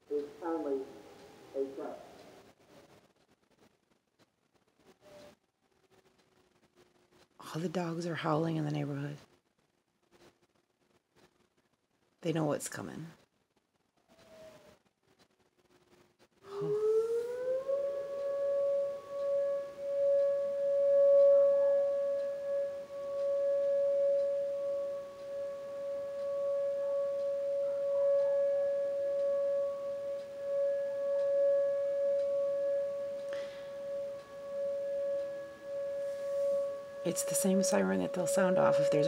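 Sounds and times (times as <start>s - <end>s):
tornado warning siren: 0.0s - 2.3s, 14.0s - 14.8s, 16.4s - 39.0s.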